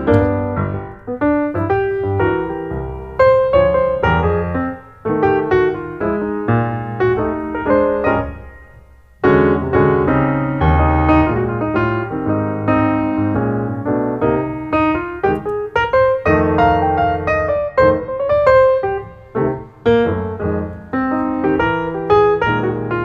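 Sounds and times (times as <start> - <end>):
piano music: 0.0 - 23.0.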